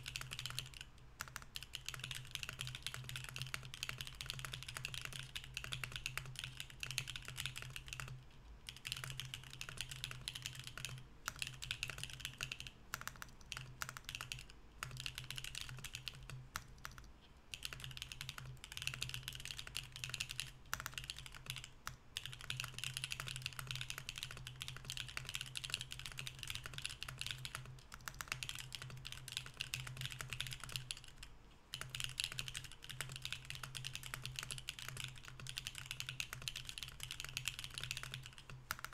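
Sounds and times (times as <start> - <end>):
mechanical keyboard typing: 0.0 - 38.9.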